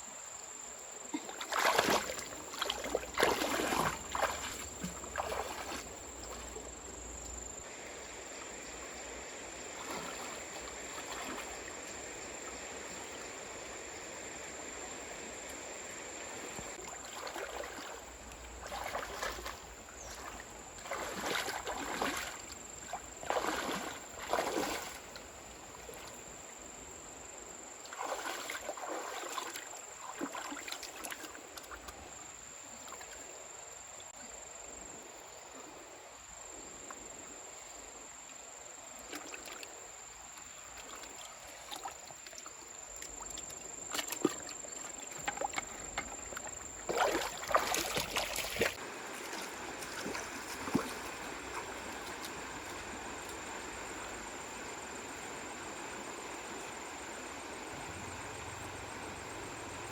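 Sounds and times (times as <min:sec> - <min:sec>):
water splashing and sloshing: 0:01.0 - 0:33.4, 0:37.8 - 0:59.9
flowing water rushing: 0:01.2 - 0:26.4, 0:40.4 - 0:59.9.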